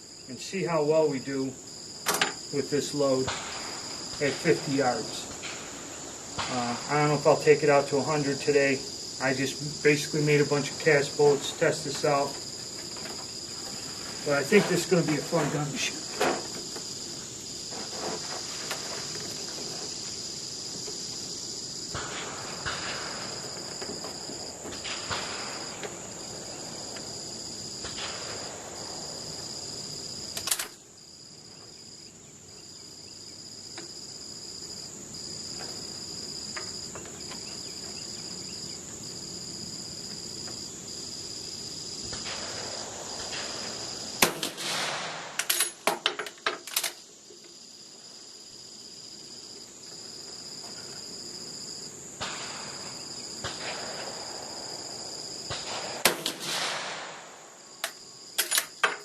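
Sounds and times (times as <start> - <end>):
insects chirring: 0.0 - 59.0
rifle bolt metallic clacks: 2.1 - 2.4, 30.4 - 30.8, 45.4 - 47.0, 57.8 - 59.0
rifle shots: 44.2 - 45.4, 55.5 - 57.5.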